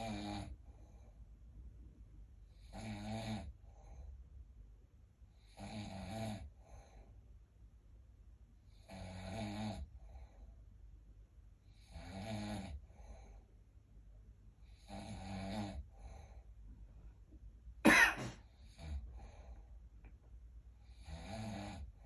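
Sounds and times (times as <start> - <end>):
person snoring: 0.0 - 0.6, 2.5 - 3.6, 5.4 - 7.0, 8.8 - 10.0, 11.7 - 13.3, 14.6 - 16.4, 20.8 - 22.0.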